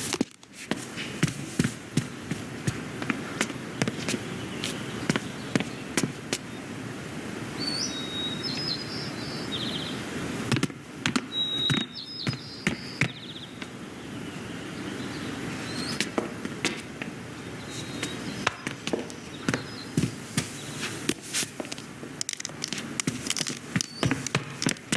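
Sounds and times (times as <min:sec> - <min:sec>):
background hiss: 0:00.0 - 0:24.9
bird chirps and trills: 0:07.6 - 0:10.1, 0:11.3 - 0:16.1, 0:17.3 - 0:21.0, 0:23.8 - 0:24.3
sharp knocks and taps: 0:21.6 - 0:24.9.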